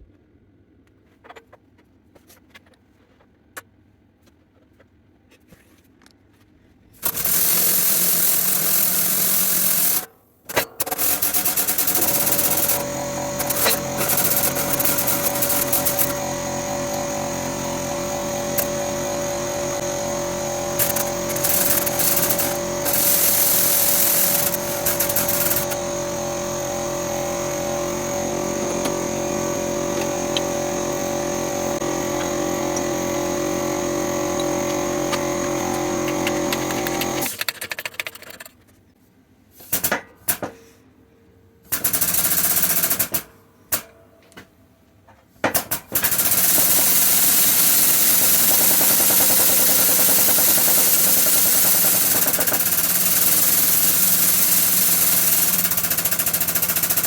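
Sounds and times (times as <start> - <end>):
machine motor whining: 7.0 - 10.1, 10.8 - 37.3, 46.0 - 57.0.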